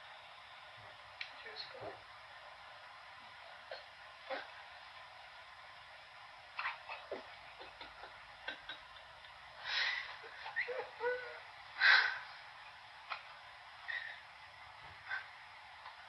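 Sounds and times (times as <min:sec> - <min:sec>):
faint breathing: 0:09.6 - 0:10.4, 0:11.0 - 0:12.5, 0:13.8 - 0:14.3, 0:15.0 - 0:15.4.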